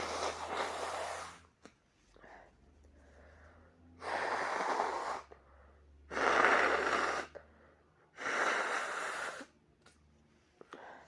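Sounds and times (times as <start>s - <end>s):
person blowing nose: 0.0s - 1.5s, 4.0s - 5.4s, 6.1s - 7.4s, 8.2s - 9.6s.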